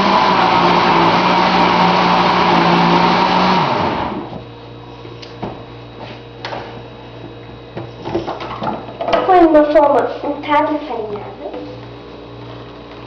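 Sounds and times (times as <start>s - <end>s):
blender motor running: 0.0s - 4.5s.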